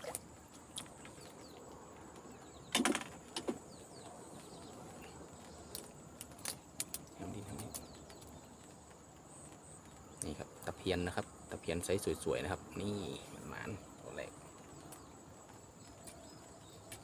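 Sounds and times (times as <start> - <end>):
fishing gear clicks and rattles: 0.0 - 3.7, 4.5 - 9.0
high insect drone: 0.0 - 17.0.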